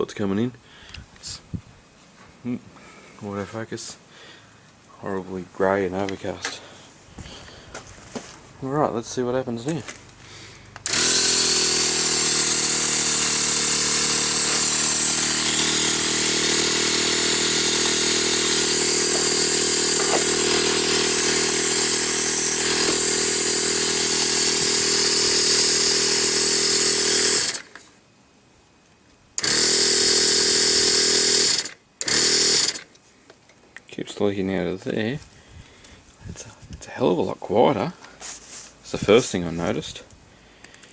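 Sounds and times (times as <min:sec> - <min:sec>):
air compressor running: 0:10.8 - 0:27.8, 0:29.4 - 0:32.9.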